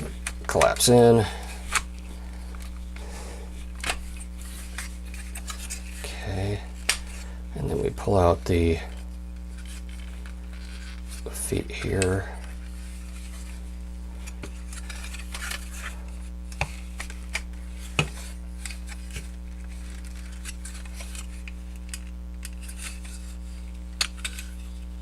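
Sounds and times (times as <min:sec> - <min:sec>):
steady electrical hum: 0:00.0 - 0:25.0
plastic toy rubbing: 0:08.6 - 0:24.9.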